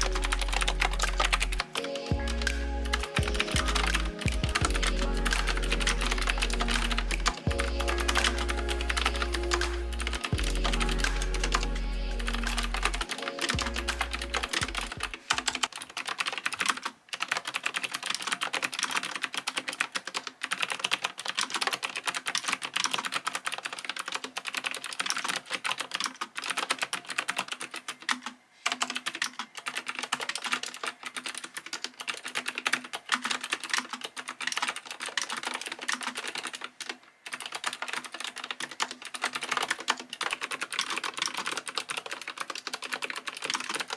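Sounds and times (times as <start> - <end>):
background music: 0.0 - 15.7
fast clicky keyboard typing: 0.0 - 43.9.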